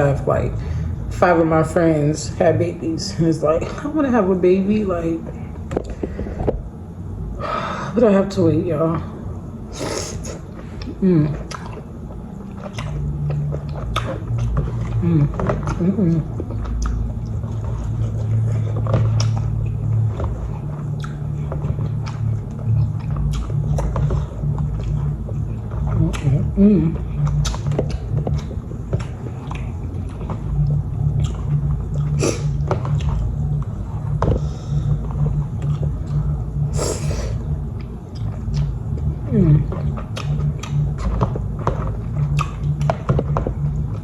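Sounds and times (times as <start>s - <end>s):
low rumble: 0.0s - 44.0s
chewing and smacking: 10.3s - 36.6s, 37.3s - 44.0s.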